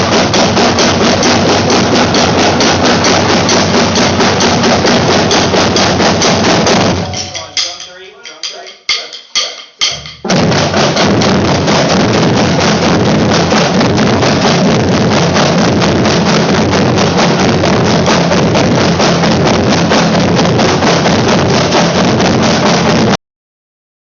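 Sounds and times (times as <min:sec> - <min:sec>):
drumline playing: 0:00.0 - 0:23.2.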